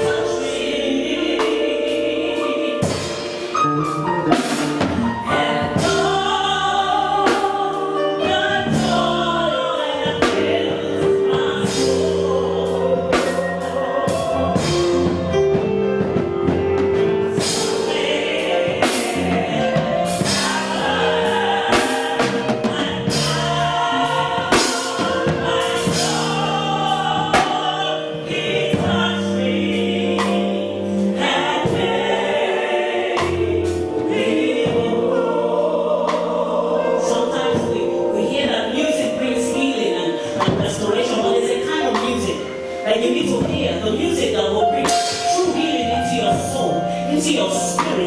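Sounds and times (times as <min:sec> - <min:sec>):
band with bass and percussion: 0:00.0 - 0:36.8
choir singing: 0:00.0 - 0:48.0.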